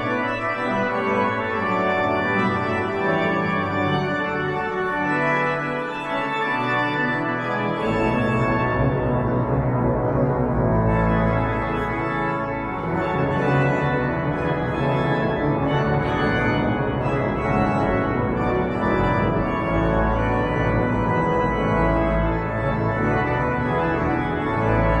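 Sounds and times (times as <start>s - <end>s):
pipe organ chords: 0.0s - 25.0s.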